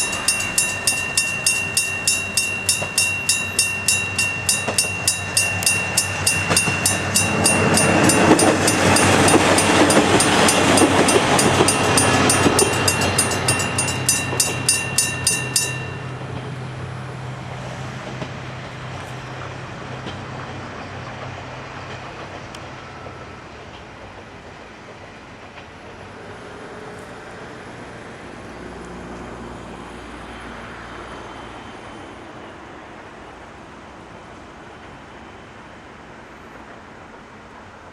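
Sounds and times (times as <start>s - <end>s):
level-crossing bell ringing: 0.0s - 16.4s
diesel railcar passing: 0.0s - 37.9s.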